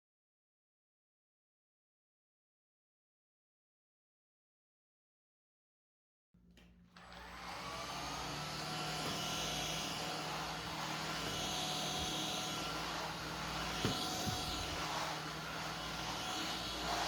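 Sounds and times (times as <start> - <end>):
stick vacuum running: 6.6 - 17.0.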